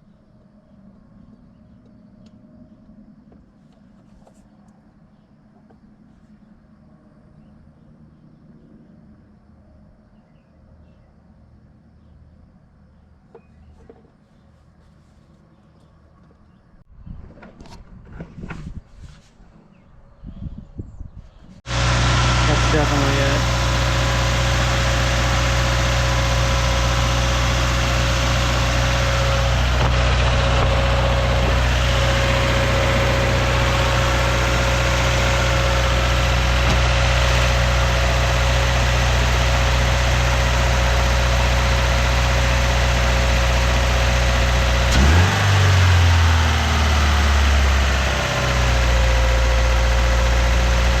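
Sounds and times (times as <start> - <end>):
car engine idling: 21.7 - 51.0
engine revving: 21.7 - 51.0.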